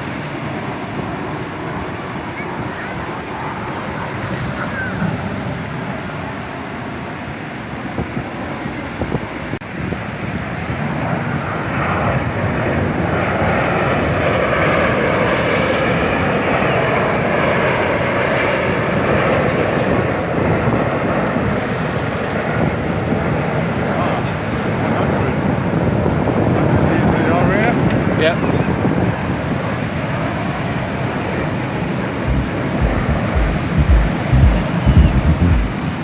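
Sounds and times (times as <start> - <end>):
sea noise: 0.0 - 12.6
jet aircraft engine: 0.0 - 32.8
wind on microphone: 32.2 - 36.0.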